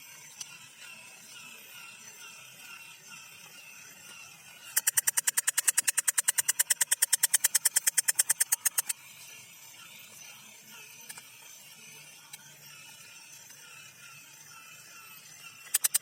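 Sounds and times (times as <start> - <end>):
toy motor and gears rattling: 0.0 - 16.0
small clicks: 4.0 - 9.0, 11.0 - 11.3, 15.6 - 16.0.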